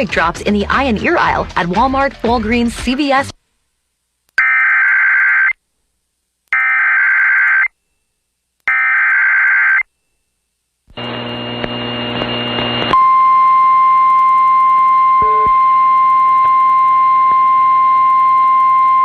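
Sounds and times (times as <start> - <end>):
rough buzzing noise: 10.9 - 12.9
steady single-pitch alarm tone: 13.0 - 19.0.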